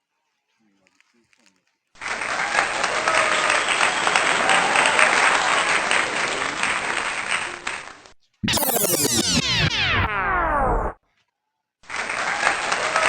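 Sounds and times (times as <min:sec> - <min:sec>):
crowd applauding: 0:02.0 - 0:07.8
music with synthesizer sweeps: 0:08.4 - 0:11.0.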